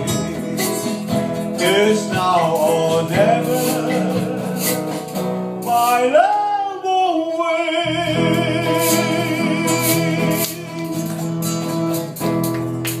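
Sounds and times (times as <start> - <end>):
person singing with vibrato: 0.0 - 11.4
band playing a ballad: 0.0 - 13.0.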